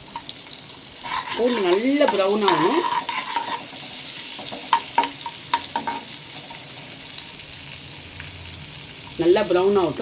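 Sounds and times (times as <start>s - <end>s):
garlic sizzling in butter: 0.0s - 10.0s.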